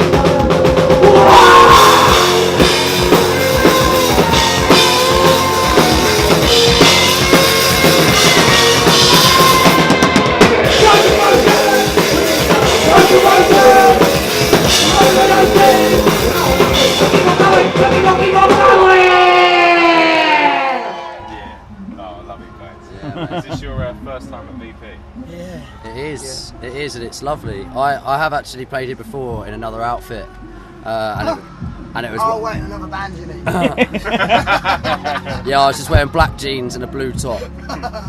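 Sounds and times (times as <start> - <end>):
drum kit: 0.0 - 20.6, 31.1 - 36.5
rock band playing: 0.0 - 20.8.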